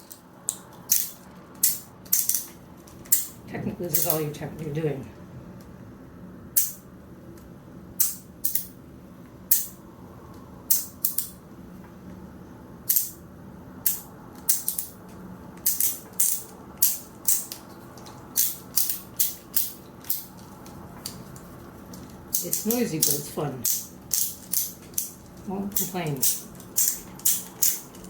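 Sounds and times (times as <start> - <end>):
fidget toy clicking: 15.6 - 17.6, 18.4 - 20.3, 22.3 - 28.0.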